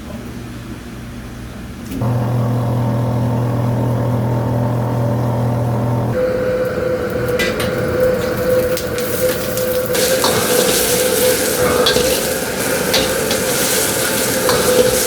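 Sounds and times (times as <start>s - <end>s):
electric motor humming: 2.0s - 6.3s
high-pitched whine: 5.5s - 15.0s.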